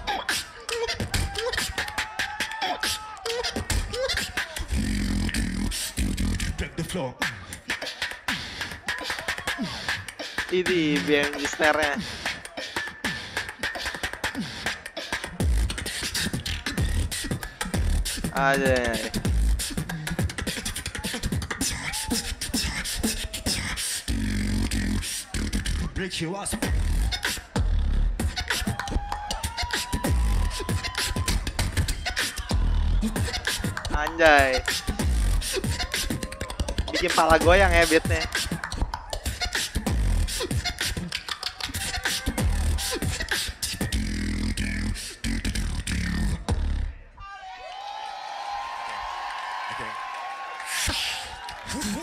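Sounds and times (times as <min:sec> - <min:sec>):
beatboxing: 0:00.0 - 0:47.0, 0:50.6 - 0:52.0
vocal bass hum: 0:03.3 - 0:08.6, 0:14.3 - 0:28.8, 0:29.8 - 0:47.0.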